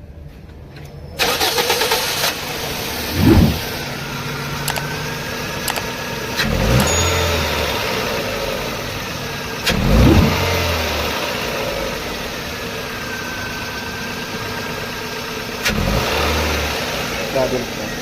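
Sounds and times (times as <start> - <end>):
car engine idling and misfiring: 0.1 - 18.0
engine revving: 1.2 - 5.8, 6.4 - 12.4, 15.6 - 17.8
sharp click: 4.7 - 4.9, 5.7 - 5.9.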